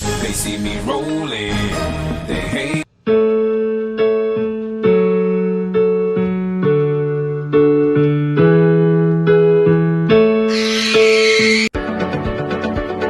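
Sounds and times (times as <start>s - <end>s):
piano-like chords: 1.5s - 11.8s.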